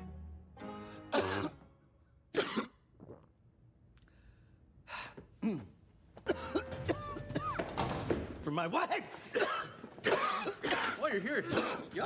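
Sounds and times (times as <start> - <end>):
person coughing: 1.1 - 1.6, 2.4 - 2.8, 5.4 - 7.7, 9.3 - 12.0.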